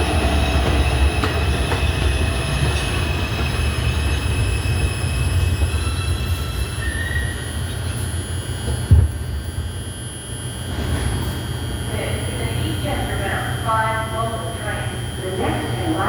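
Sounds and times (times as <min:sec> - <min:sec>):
train wheels rumbling on rail: 0:00.0 - 0:08.0
high wheel squeal: 0:00.0 - 0:08.1.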